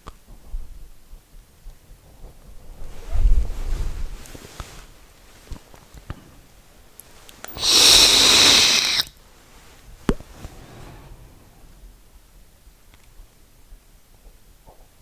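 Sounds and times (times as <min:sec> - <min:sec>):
e-cigarette vapour exhale hiss: 0:07.4 - 0:09.1.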